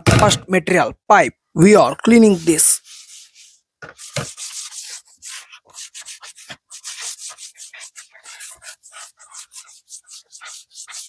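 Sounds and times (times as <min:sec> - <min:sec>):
scrubbing a pipe by hand: 0:02.3 - 0:11.0.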